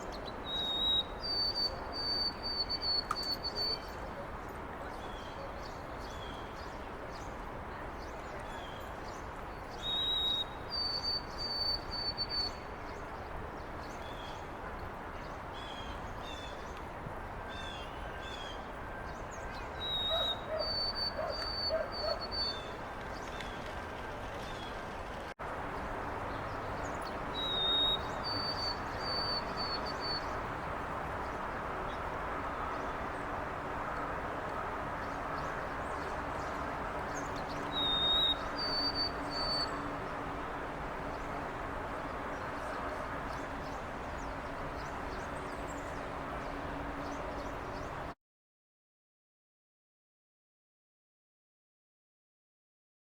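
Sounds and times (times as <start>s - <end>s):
city background noise: 0.0s - 48.2s
sparrow whistled song: 0.2s - 3.9s, 9.8s - 12.7s, 19.1s - 22.8s, 26.8s - 30.4s, 37.1s - 39.8s.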